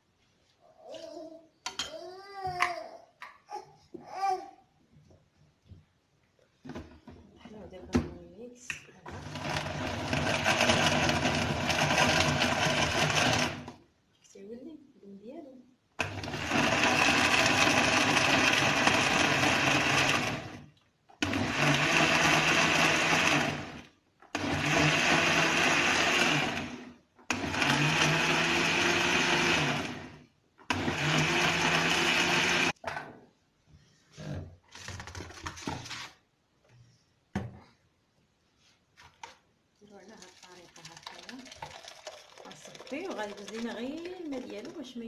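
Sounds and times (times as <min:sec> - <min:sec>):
electric blender grinding fruit: 0:09.1 - 0:13.8, 0:16.0 - 0:20.6, 0:21.2 - 0:32.8, 0:40.5 - 0:44.9.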